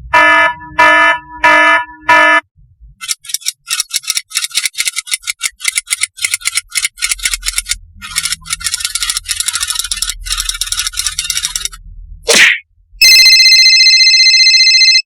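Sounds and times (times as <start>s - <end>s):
rapid rattling clicks: 3.0s - 11.8s.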